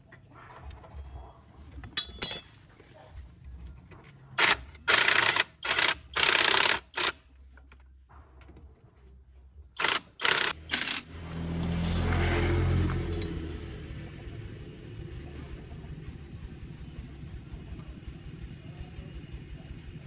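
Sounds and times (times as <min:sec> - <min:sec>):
low engine rumble: 0:06.7 - 0:20.0.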